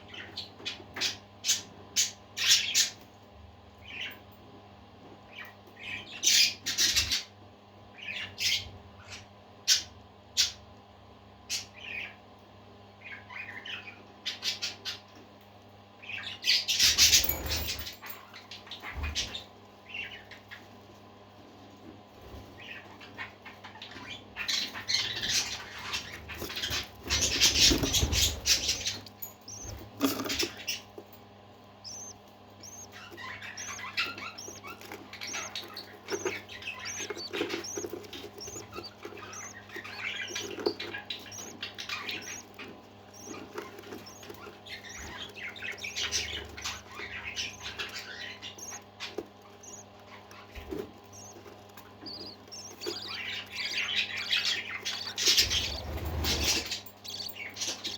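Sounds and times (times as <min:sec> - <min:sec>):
parakeets chattering and warbling: 0:16.0 - 0:20.6, 0:22.2 - 0:57.9.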